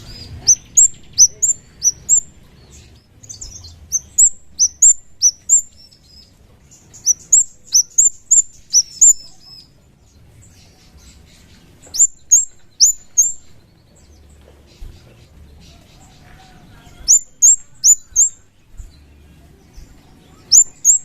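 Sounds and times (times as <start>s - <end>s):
bird calling high sharp chips: 0.0s - 6.1s, 6.9s - 9.6s, 11.8s - 13.6s, 16.9s - 18.5s, 20.3s - 21.0s.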